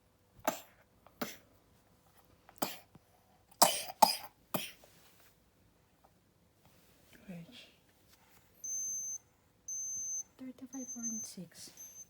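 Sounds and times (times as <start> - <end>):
child coughing: 0.5 - 1.5, 2.6 - 2.9, 3.6 - 4.8.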